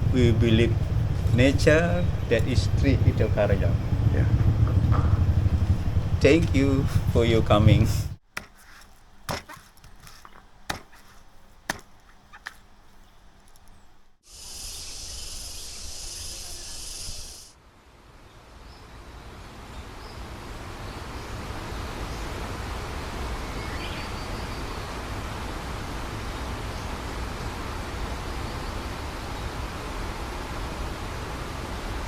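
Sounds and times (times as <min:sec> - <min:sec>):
high insect buzz: 0:11.0 - 0:17.5.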